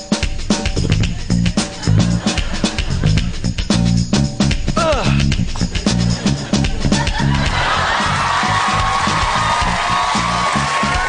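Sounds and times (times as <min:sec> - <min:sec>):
piano rhythmic beat: 0:00.0 - 0:11.0
audience noise: 0:05.8 - 0:11.0.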